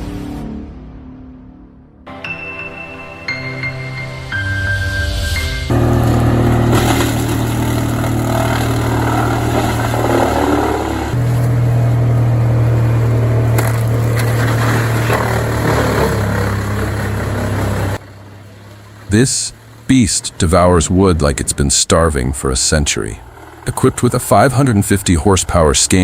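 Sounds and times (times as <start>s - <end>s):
branches crunching and scraping: 5.7s - 19.9s
wood chipper engine drone: 5.7s - 26.0s.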